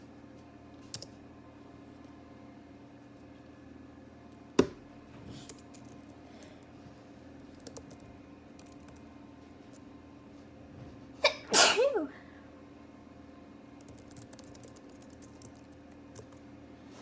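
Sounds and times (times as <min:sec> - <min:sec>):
faint steady hum: 0:00.0 - 0:17.0
person sneezing: 0:11.2 - 0:12.2.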